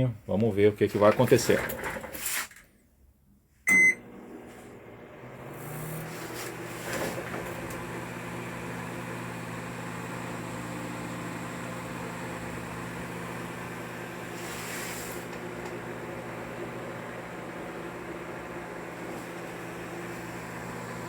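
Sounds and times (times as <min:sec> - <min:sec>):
microwave oven humming: 0:03.7 - 0:14.4, 0:15.1 - 0:21.0.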